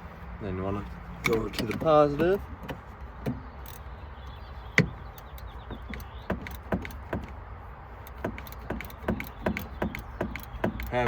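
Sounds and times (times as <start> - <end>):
ratcheting wrench clicking: 3.6 - 3.9, 5.1 - 7.3, 8.0 - 11.0.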